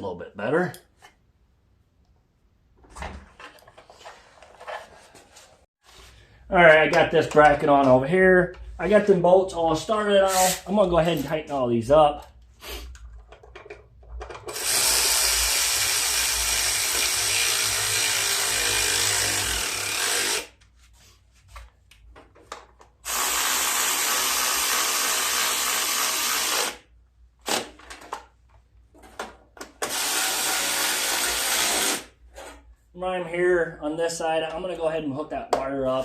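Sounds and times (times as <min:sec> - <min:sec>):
power driver running bolts: 0:14.3 - 0:20.5.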